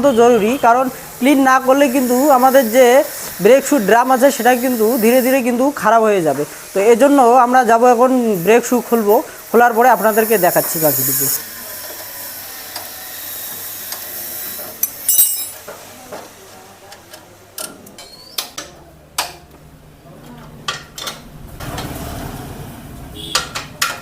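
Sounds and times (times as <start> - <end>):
hiss: 1.8 - 5.6, 8.3 - 14.8
metal tools clinking and knocking: 14.8 - 15.6.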